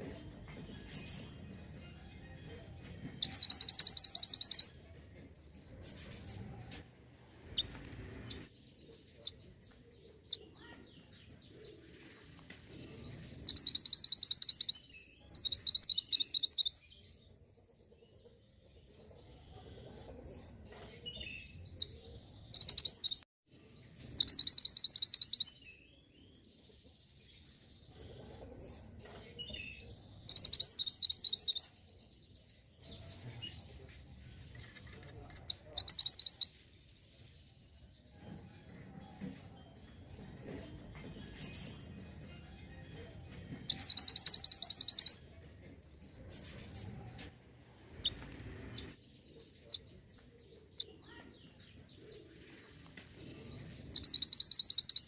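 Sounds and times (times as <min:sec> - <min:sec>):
songbird trilling: 0:03.2 - 0:04.7, 0:13.5 - 0:14.8, 0:15.4 - 0:16.8, 0:24.2 - 0:25.6, 0:30.3 - 0:31.7, 0:35.8 - 0:36.5, 0:43.7 - 0:45.2, 0:53.9 - 0:55.0.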